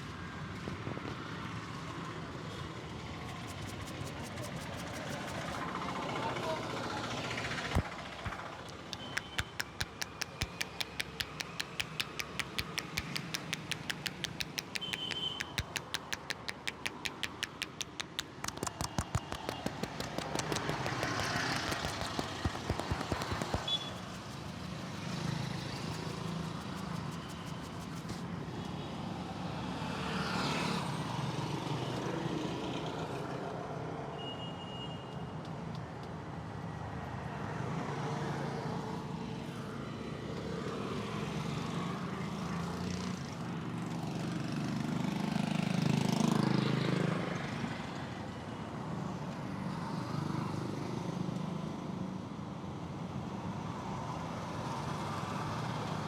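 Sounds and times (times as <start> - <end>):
street traffic: 3.1 - 29.6
hands slapping on a person: 3.4 - 5.6, 9.0 - 28.2.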